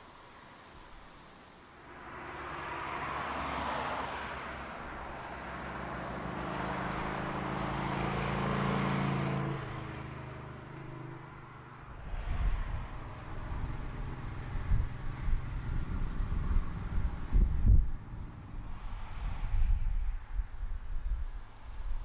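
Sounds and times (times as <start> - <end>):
wind buffeting microphone: 11.9 - 22.0.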